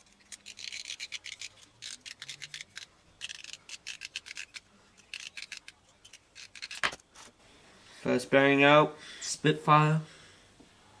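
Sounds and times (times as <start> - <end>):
sharp scraping clicks: 0.1 - 7.0.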